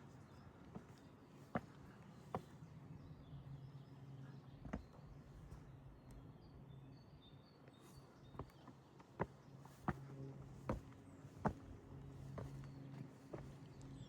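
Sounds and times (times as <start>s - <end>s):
footsteps on stone path: 0.0s - 2.6s, 4.6s - 5.6s, 8.2s - 14.0s
quiet outdoor ambience: 0.0s - 14.0s.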